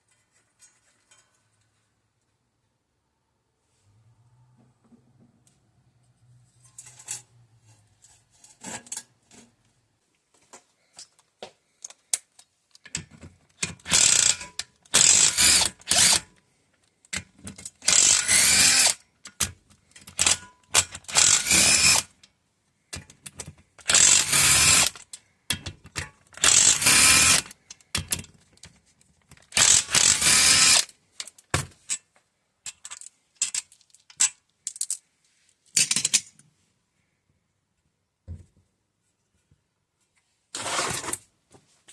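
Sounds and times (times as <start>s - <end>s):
ratchet wrench clicking: 13.9s - 16.2s, 17.8s - 19.0s, 23.9s - 25.0s, 26.4s - 27.5s, 29.6s - 30.9s.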